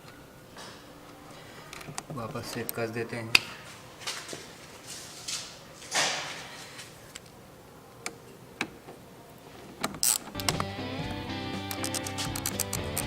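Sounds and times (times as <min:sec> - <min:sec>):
socket wrench clicking: 0:11.7 - 0:13.0.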